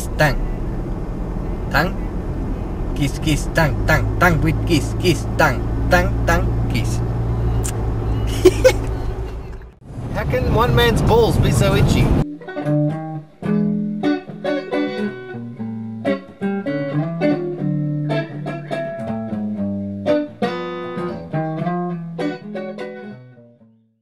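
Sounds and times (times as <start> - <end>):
plucked guitar notes: 0.0 - 9.7, 12.2 - 23.8
low bass line: 0.0 - 12.2.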